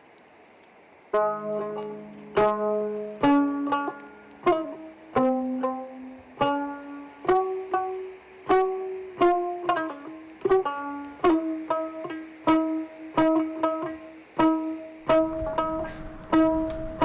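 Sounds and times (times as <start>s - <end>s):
plucked string instrument melody: 1.1s - 17.0s.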